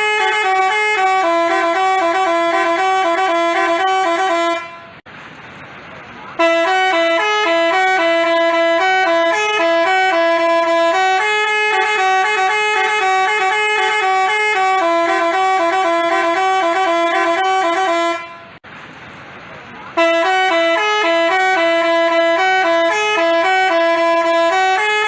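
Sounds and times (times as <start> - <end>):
musical bus horn tune: 0.0 - 5.0, 6.4 - 18.6, 20.0 - 25.0.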